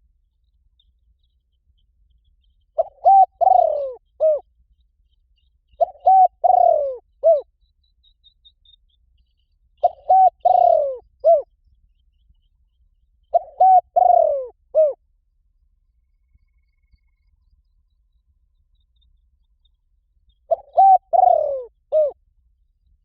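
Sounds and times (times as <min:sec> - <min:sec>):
dove cooing: 0:02.8 - 0:04.5, 0:05.8 - 0:07.5, 0:09.8 - 0:11.5, 0:13.3 - 0:15.0, 0:20.5 - 0:22.2.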